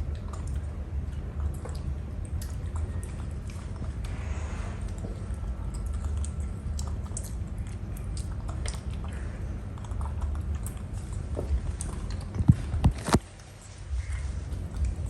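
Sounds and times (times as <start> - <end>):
monkey chewing grapes: 0.0 - 15.0.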